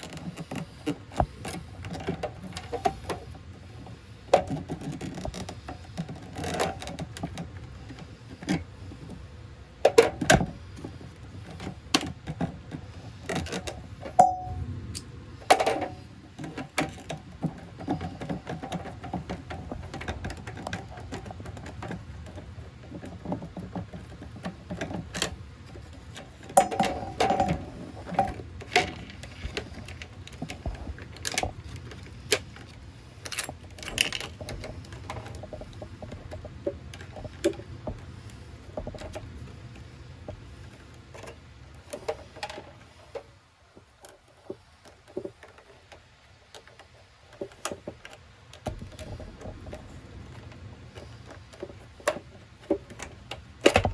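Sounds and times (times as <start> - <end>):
steady low hum: 0.0 - 53.9
hand tools clicking and tapping: 9.8 - 43.2.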